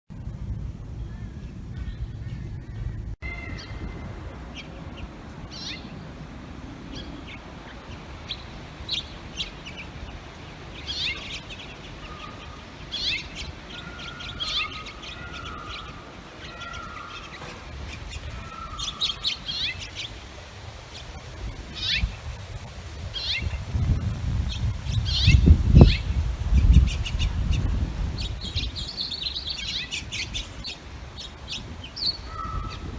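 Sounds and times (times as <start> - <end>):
low steady rumble: 0.1 - 13.8
finches chirping: 1.1 - 22.2, 23.1 - 23.7, 24.4 - 32.9.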